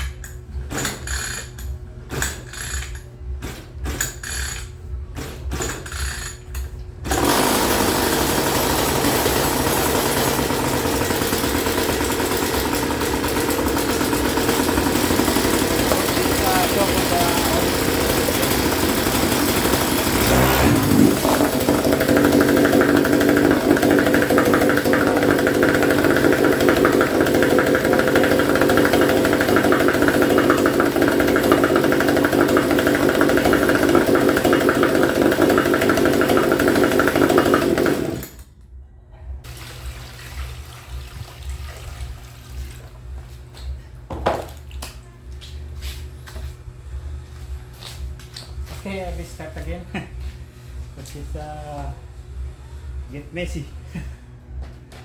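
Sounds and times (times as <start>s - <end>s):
outboard motor running: 7.1s - 38.4s.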